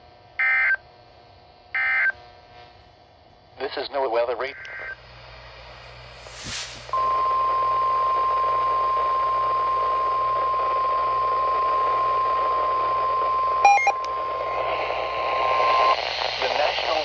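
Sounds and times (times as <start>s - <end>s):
radio static burst: 4.5s - 7.0s, 13.7s - 17.0s
steady warning alarm tone: 6.9s - 15.2s
short higher beep: 13.6s - 14.0s.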